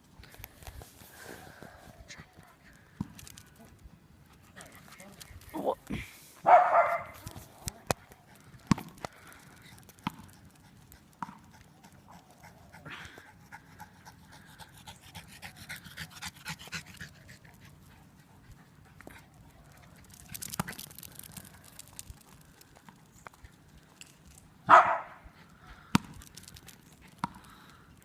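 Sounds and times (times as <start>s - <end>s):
dog panting: 9.5s - 20.9s.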